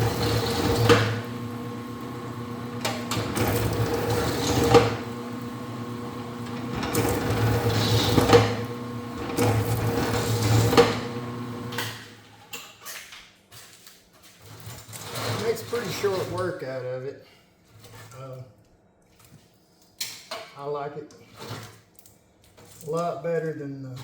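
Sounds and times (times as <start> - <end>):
machine motor hum: 0.0 - 12.2.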